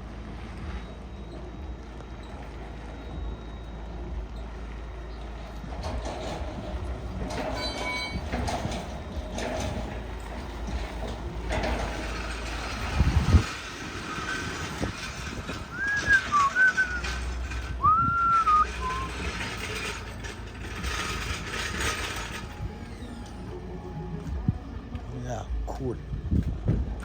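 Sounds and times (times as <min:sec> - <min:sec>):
low rumble and hiss: 0:00.0 - 0:27.0
sliding whistled notes: 0:15.7 - 0:19.5.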